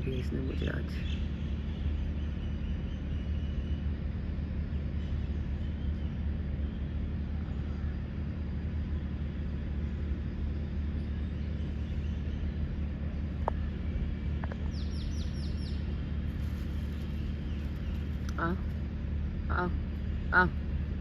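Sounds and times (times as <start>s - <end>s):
steady low rumble: 0.0s - 21.0s
small bird chirping: 14.3s - 15.9s.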